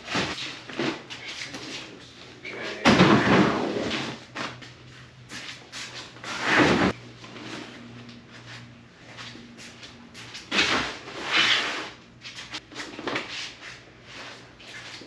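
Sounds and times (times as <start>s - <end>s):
rustling and scraping while packing: 0.0s - 15.0s.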